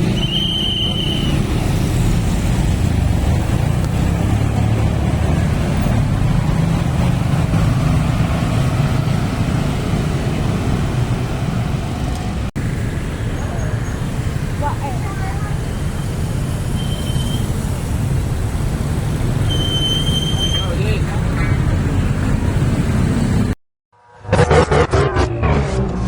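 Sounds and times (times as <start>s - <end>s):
road traffic: 0.0s - 26.0s
vehicle engine rumbling: 0.0s - 26.0s.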